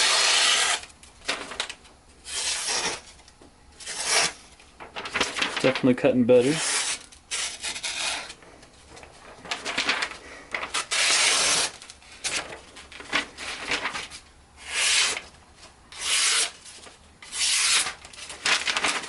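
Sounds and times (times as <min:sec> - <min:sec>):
knife slicing through paper: 0:03.8 - 0:04.4, 0:09.5 - 0:12.5, 0:16.0 - 0:19.0.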